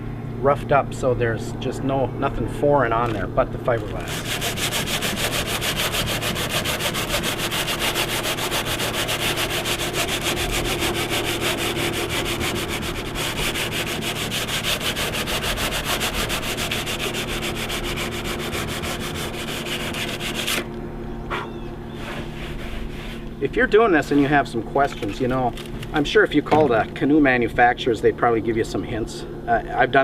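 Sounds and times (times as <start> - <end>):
sandpaper sanding: 3.8 - 20.7, 22.0 - 23.3.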